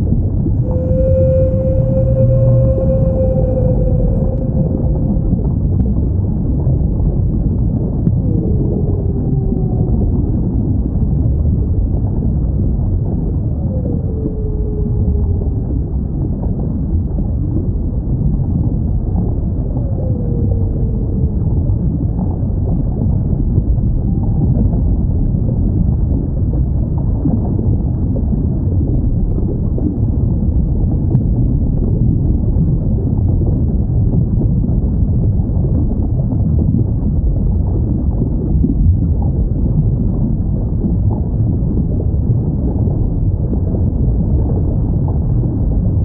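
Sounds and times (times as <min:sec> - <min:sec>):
low underwater rumble: 0:00.0 - 0:46.0
faint whale calls: 0:00.5 - 0:17.1, 0:18.8 - 0:25.2.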